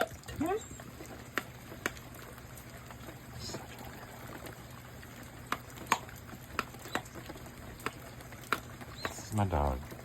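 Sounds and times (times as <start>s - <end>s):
sharp drips: 0.0s - 10.0s
rain hiss: 0.4s - 6.9s.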